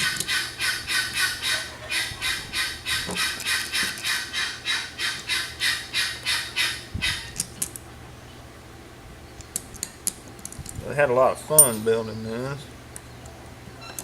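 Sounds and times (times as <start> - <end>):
guineafowl calling harshly: 0.0 - 7.4.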